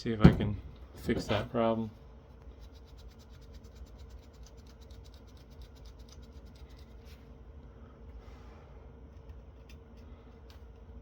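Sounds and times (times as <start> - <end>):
rapid rhythmic scratching: 2.6 - 6.8.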